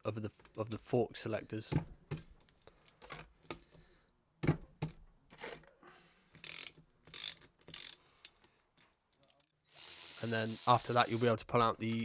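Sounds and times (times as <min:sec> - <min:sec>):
ratchet wrench clicking: 0:06.4 - 0:08.4, 0:09.7 - 0:11.2.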